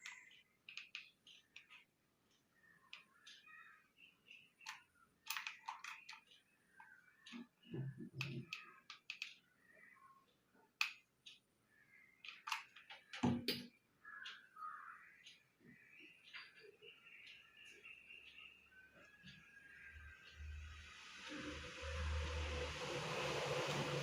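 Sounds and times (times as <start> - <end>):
hard plastic clicks and taps: 0.0 - 1.9, 4.6 - 9.4, 12.2 - 13.7.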